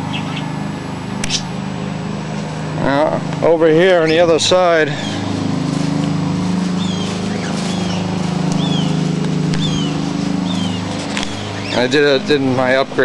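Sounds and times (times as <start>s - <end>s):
bird chirping: 0.0s - 0.6s, 4.9s - 5.4s, 6.7s - 12.0s
low mechanical hum: 0.0s - 13.0s.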